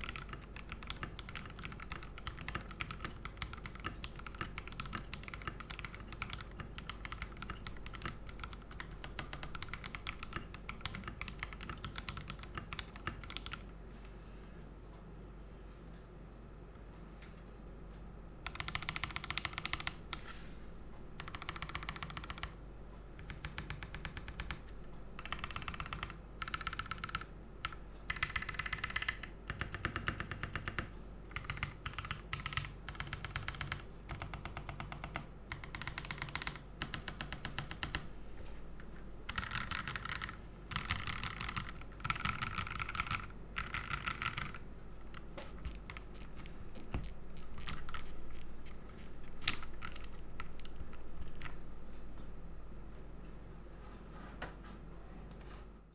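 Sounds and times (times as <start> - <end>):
mechanical keyboard typing clacks: 0.0 - 13.6, 18.4 - 20.2, 21.2 - 22.6, 23.2 - 38.1, 39.3 - 48.8.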